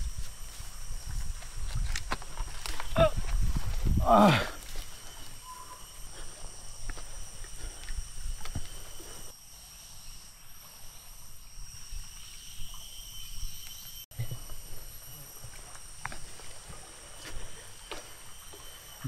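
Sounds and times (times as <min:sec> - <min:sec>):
insects droning: 0:00.0 - 0:19.0.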